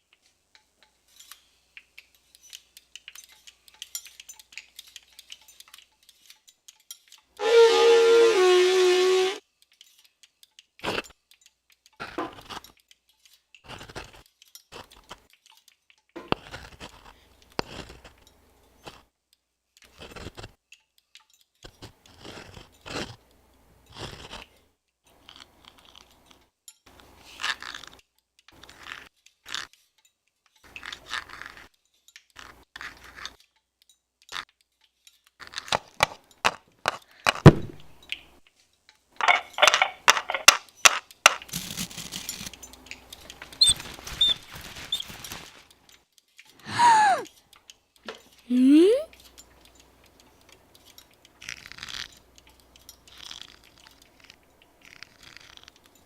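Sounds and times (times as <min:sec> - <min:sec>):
objects crunching clinking and scraping: 0:00.6 - 0:07.3, 0:38.6 - 0:46.6
heavy thump: 0:37.5 - 0:37.8.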